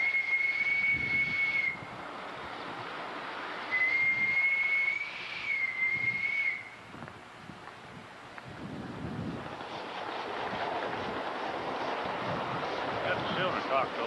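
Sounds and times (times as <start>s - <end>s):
steam whistle: 0.0s - 1.9s, 3.7s - 6.8s
steam hiss: 0.0s - 6.8s.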